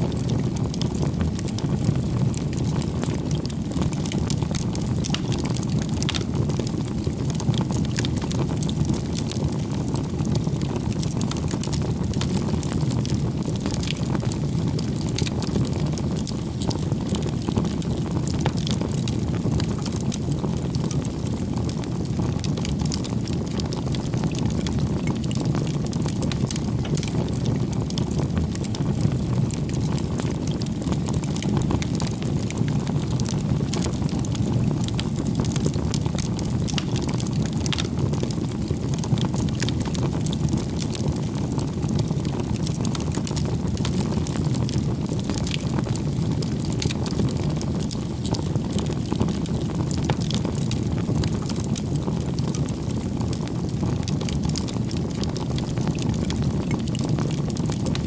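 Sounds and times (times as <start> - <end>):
fire crackling and popping: 0.0 - 58.0
low rumble of flames: 0.0 - 58.0.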